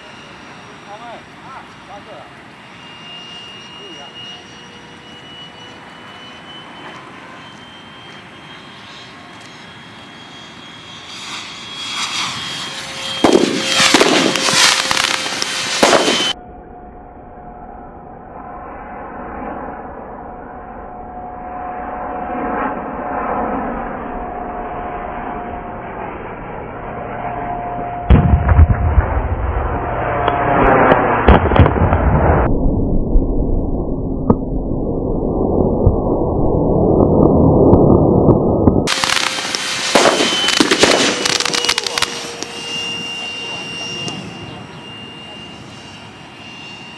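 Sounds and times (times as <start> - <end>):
model jet high whine: 0.0 - 46.9
missile launch sound effect: 11.1 - 16.4, 28.1 - 44.4
loud cracks and crackling: 13.2 - 16.4, 38.8 - 42.5.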